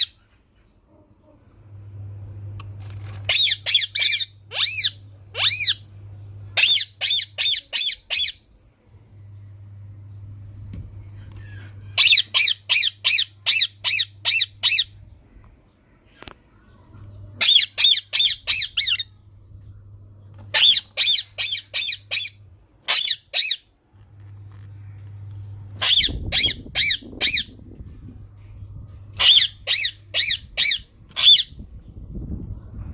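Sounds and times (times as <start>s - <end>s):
parrot screeching: 3.3s - 5.8s, 6.6s - 8.4s, 12.0s - 14.9s, 17.4s - 19.1s, 20.5s - 23.7s, 25.8s - 27.5s, 29.2s - 31.6s.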